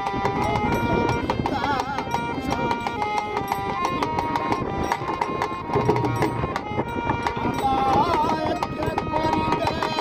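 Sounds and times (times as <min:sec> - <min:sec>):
folk melody of held notes: 0:00.0 - 0:10.0
knocking percussion rhythm: 0:00.0 - 0:10.0.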